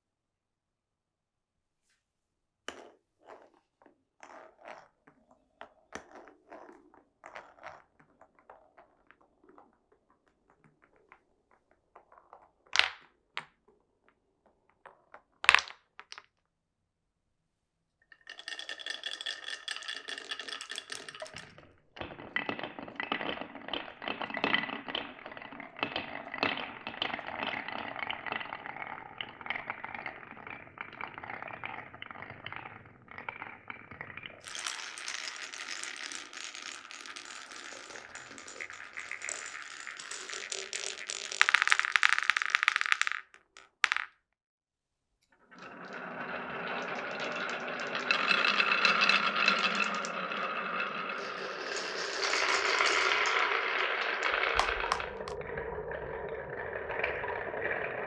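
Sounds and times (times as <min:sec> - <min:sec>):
marbles clattering along a marble run: 0:18.1 - 0:44.2, 0:45.5 - 0:58.0.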